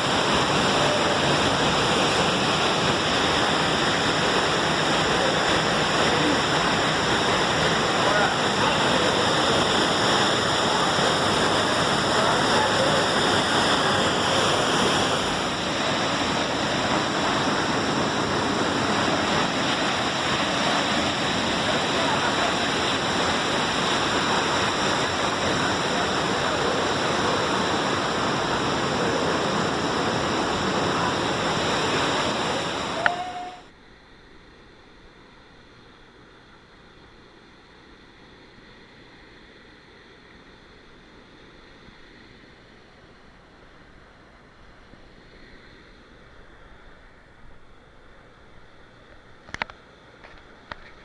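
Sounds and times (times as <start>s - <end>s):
waterfall rushing: 0.0s - 33.7s.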